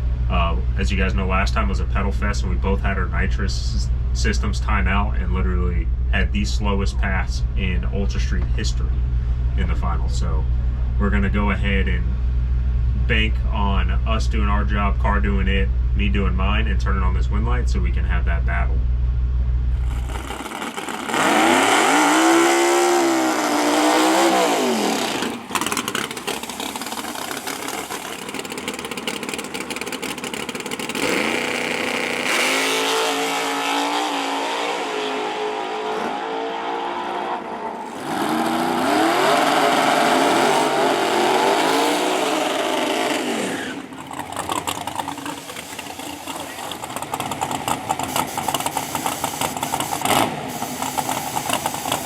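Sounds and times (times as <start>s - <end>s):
race car engine revving: 19.7s - 52.0s.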